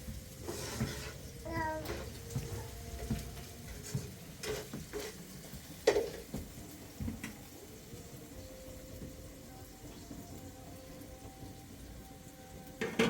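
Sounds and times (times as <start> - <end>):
utensils and pots clinking: 0.0 - 8.9, 12.4 - 13.0.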